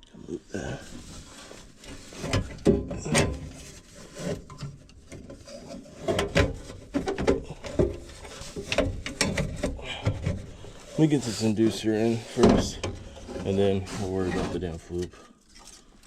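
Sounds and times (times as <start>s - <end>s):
metal parts knocking and scraping: 1.9s - 11.0s.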